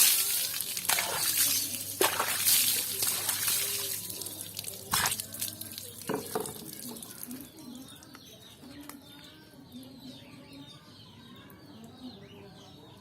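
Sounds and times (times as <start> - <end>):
water splashing and dripping: 0.0 - 7.6.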